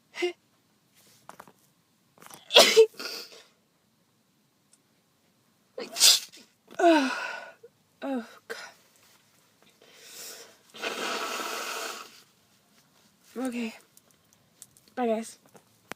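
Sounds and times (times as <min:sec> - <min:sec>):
person sneezing: 0:02.5 - 0:03.5, 0:05.8 - 0:07.4, 0:10.8 - 0:12.2.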